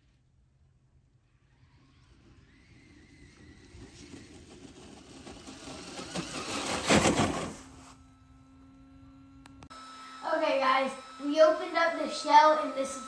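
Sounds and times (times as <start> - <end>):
rc car motor running fast: 1.1 - 13.0
steady low hum: 3.1 - 13.0.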